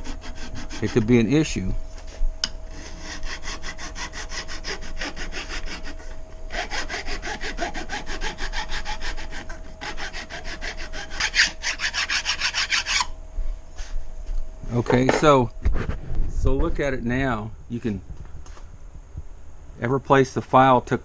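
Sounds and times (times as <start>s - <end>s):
file rasping on metal: 0.0s - 1.3s, 2.7s - 13.1s.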